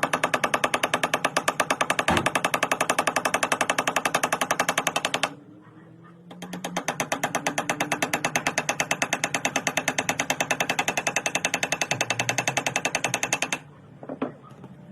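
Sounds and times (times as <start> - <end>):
rapid mechanical clicking: 0.0 - 5.4, 6.3 - 14.7.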